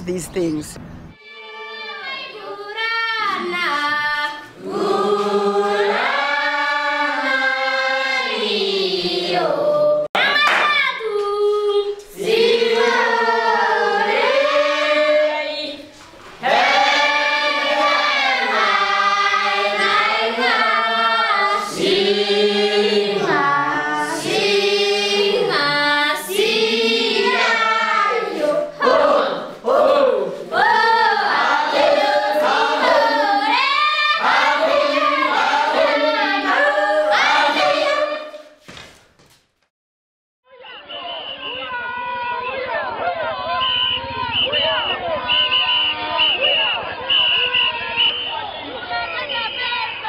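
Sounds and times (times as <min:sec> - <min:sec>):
choir singing: 0:01.2 - 0:10.4, 0:11.0 - 0:38.6.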